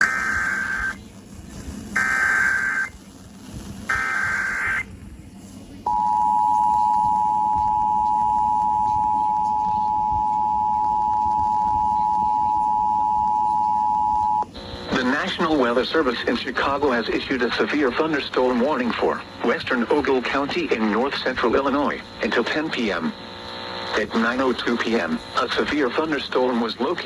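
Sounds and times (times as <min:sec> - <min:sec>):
screeching digital data bursts: 0:00.0 - 0:01.0, 0:02.0 - 0:03.0, 0:03.9 - 0:04.8, 0:11.5 - 0:27.0.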